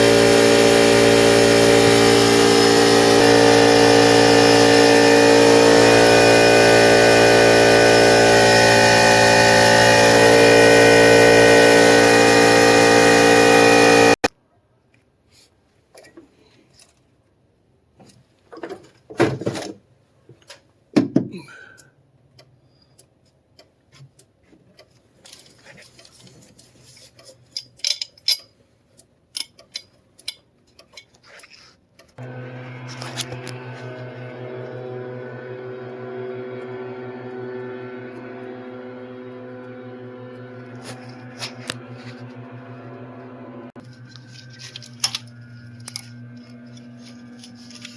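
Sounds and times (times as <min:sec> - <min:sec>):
engine hum: 0:00.0 - 0:14.3, 0:32.2 - 0:47.9
small motor running: 0:00.0 - 0:14.3, 0:32.2 - 0:47.9
metallic clicks of hand tools: 0:27.2 - 0:31.5.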